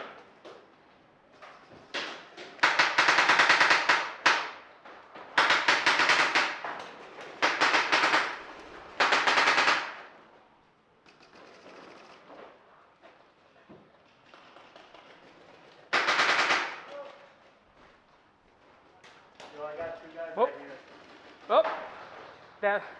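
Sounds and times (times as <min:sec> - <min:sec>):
paintball marker firing: 0:05.4 - 0:08.4.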